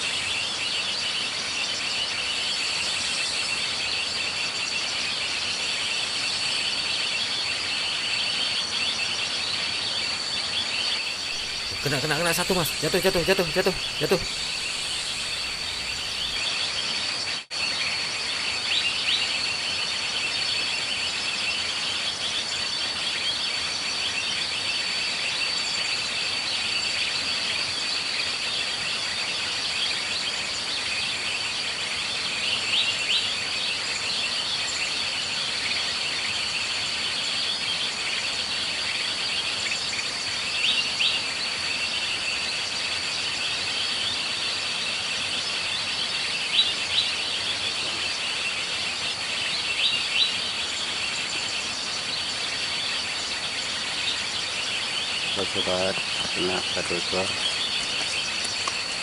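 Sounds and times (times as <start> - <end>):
busy chirping: 11.1 - 16.4
short sharp bird calls: 11.1 - 16.4
high thin insect drone: 11.1 - 16.5.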